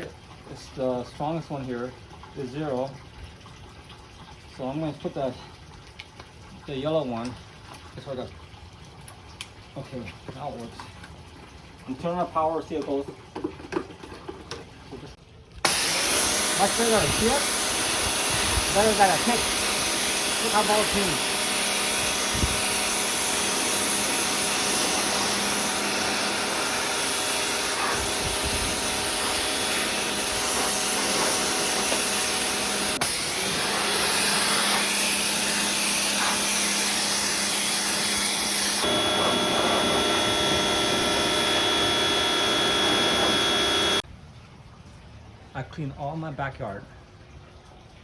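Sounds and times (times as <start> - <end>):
pressure washer motor hum: 15.6 - 44.0
water jet hissing: 15.7 - 44.0.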